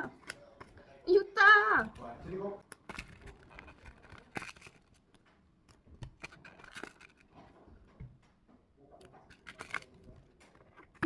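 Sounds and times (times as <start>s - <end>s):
paper and plastic rustling: 2.0s - 5.3s, 6.0s - 7.9s, 9.2s - 11.0s.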